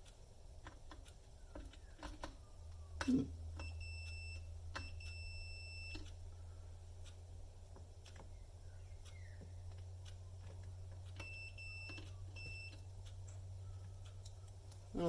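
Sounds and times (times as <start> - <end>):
low steady hum: 0.0 - 15.0
multimeter continuity beeps: 1.2 - 6.2, 8.2 - 14.6.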